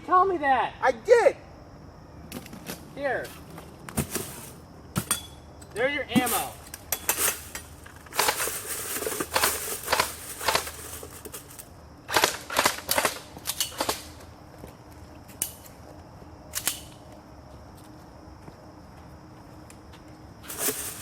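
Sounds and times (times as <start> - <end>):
airsoft guns firing: 12.1 - 14.2.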